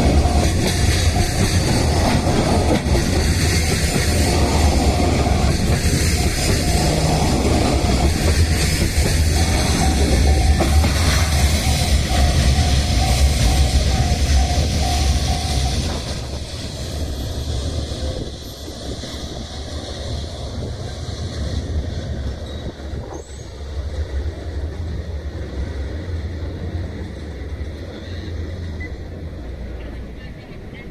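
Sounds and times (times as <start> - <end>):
freight train rolling past: 0.0 - 30.9.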